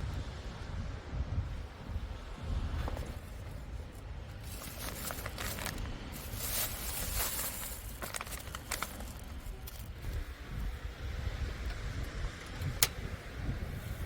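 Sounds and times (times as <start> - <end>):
wind buffeting microphone: 0.0 - 14.0
light crunching and clicking: 2.9 - 10.2.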